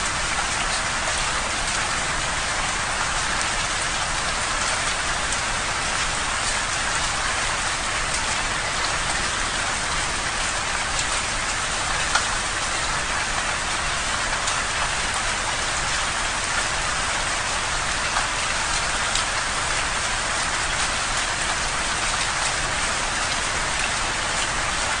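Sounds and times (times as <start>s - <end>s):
rain on a window pane: 0.0s - 25.0s
raindrop ticks: 12.1s - 12.4s.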